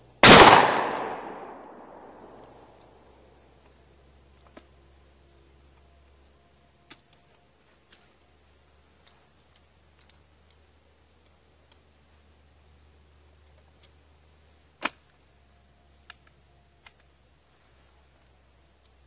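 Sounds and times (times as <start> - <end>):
gun sharp snap: 0.2 - 2.6
gun metallic clicks: 0.2 - 2.9.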